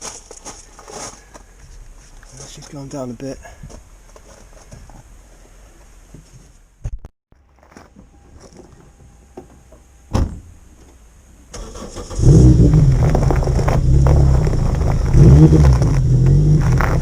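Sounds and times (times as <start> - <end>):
loud thump: 10.1 - 10.6.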